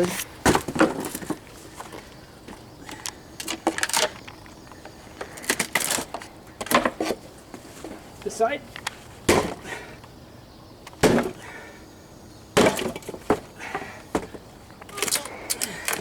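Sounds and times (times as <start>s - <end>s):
wooden boards knocking and clattering: 0.0s - 4.2s, 4.8s - 8.0s, 9.3s - 9.8s, 11.0s - 11.6s, 12.6s - 16.0s.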